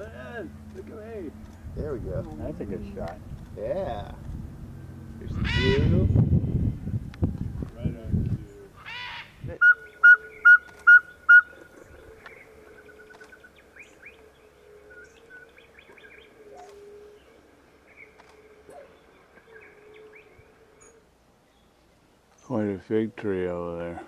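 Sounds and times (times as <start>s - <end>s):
birds whistling and chirping: 5.3s - 21.7s.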